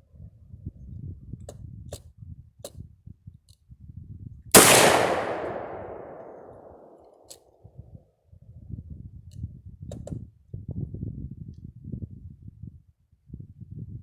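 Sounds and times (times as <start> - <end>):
faint sharp cracks: 4.6 - 7.1
rifle shot with echo: 4.6 - 7.1.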